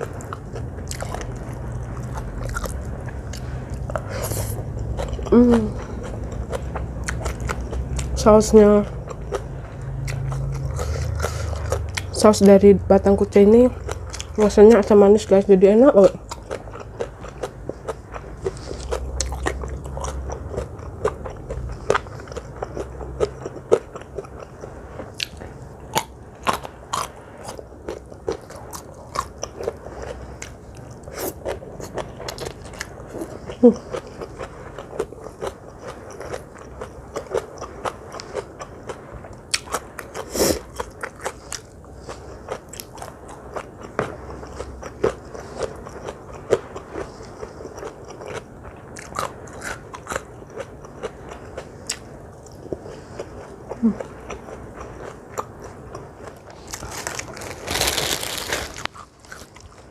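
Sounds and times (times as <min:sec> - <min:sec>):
person chewing crunchy food: 0:00.0 - 0:15.0, 0:15.9 - 0:59.9.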